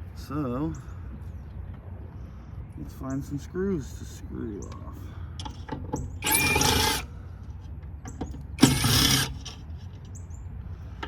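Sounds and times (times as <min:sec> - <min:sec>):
cordless drill whining: 0:06.2 - 0:07.1, 0:08.6 - 0:09.6.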